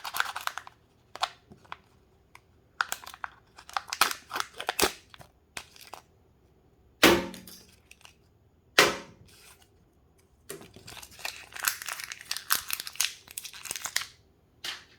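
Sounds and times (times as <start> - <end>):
wrappers tearing and crinkling: 0.0 - 1.9, 2.8 - 6.1, 10.6 - 14.2.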